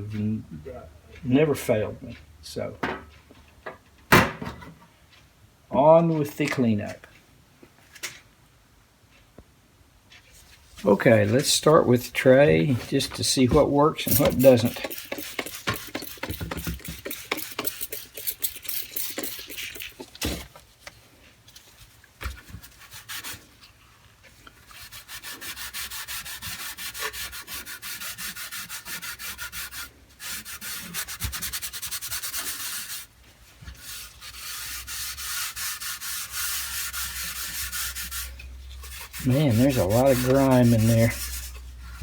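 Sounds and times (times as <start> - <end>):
scrubbing metal tray by hand: 10.8 - 20.5, 24.7 - 33.1, 33.8 - 42.0.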